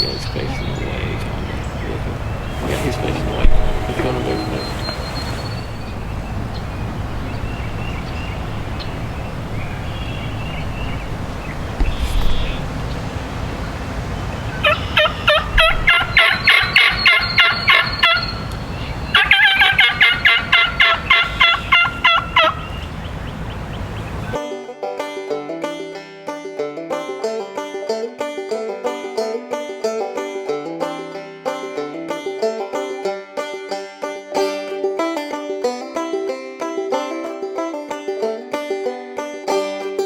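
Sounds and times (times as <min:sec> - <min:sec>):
turkey calls: 0:00.0 - 0:24.4
wind noise: 0:00.0 - 0:24.4.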